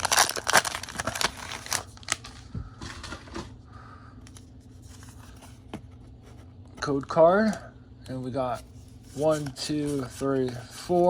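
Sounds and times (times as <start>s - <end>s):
foil wrapper crinkling: 0.0s - 3.1s
cards being handled: 8.5s - 11.0s.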